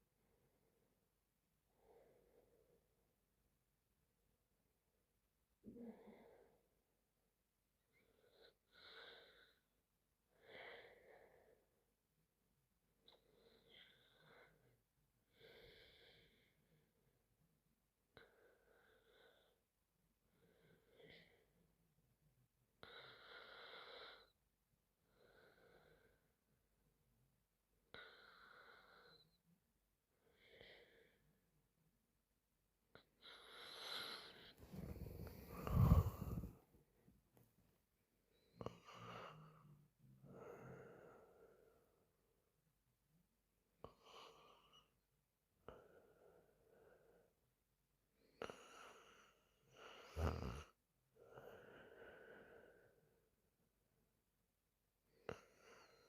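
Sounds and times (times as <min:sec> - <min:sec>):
woman breathing softly: 0:33.0 - 0:36.8, 0:51.2 - 0:53.2
woman snoring: 0:33.4 - 0:36.6, 0:49.9 - 0:50.8.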